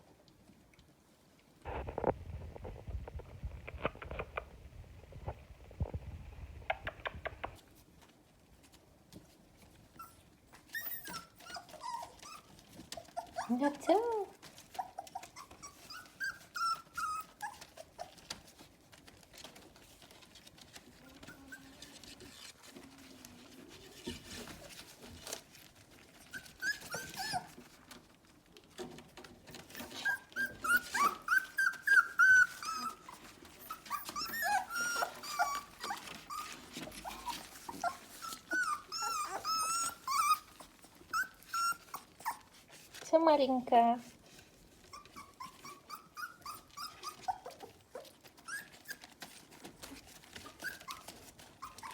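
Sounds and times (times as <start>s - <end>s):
puppies whining: 9.9s - 28.2s, 29.5s - 42.8s, 44.7s - 51.9s.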